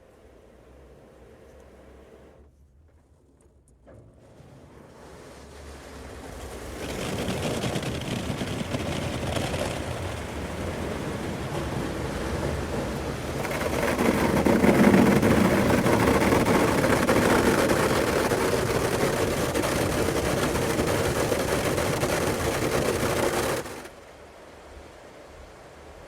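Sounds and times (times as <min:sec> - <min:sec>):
car wash rushing and rattling: 0:04.3 - 0:23.9.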